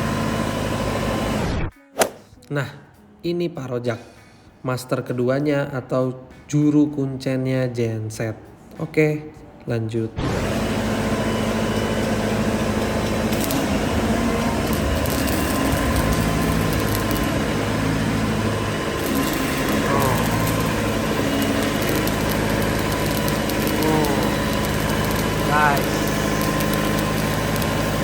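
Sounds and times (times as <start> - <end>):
diesel generator engine running: 0.0 - 1.6, 10.2 - 28.0.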